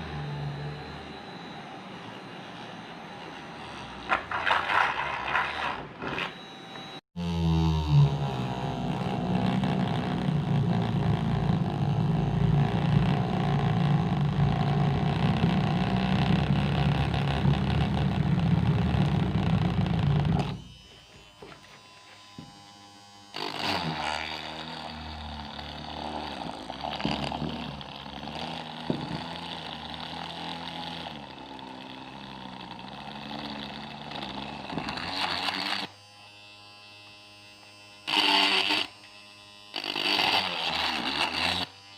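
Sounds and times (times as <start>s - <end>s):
small electric drill motor running: 0.0s - 41.9s.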